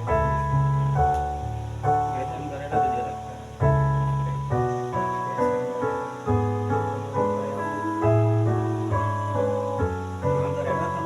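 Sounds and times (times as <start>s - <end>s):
piano chords: 0.0s - 11.0s
person singing: 6.9s - 11.0s.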